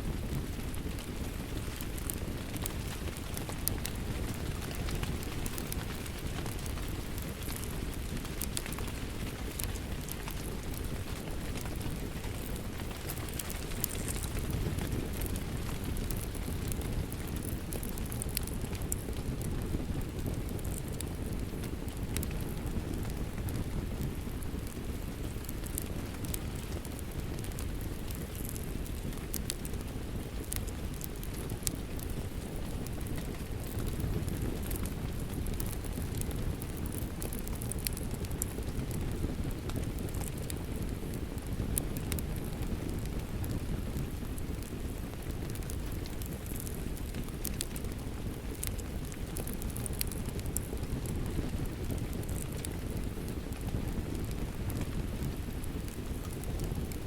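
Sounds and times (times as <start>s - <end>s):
wood fire crackling: 0.0s - 57.0s.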